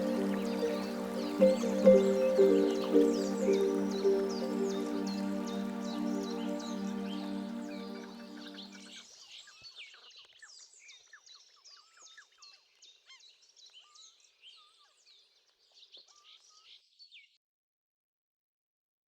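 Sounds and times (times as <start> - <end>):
soft music: 0.0 - 9.0
small birds chirping: 0.0 - 16.8.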